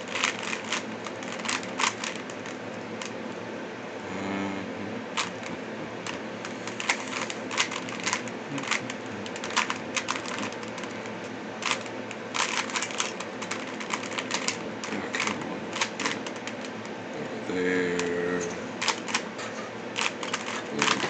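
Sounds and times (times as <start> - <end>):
puzzle cube plastic clicks: 0.1 - 3.1, 5.2 - 16.7, 18.8 - 19.2, 20.0 - 21.0.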